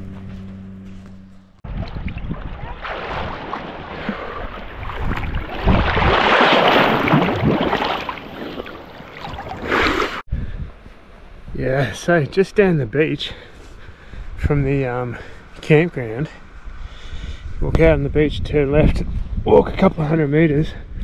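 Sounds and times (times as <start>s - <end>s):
wind buffeting microphone: 1.7s - 9.6s, 10.2s - 11.7s, 16.6s - 21.0s
surf washing onto beach: 2.7s - 10.1s.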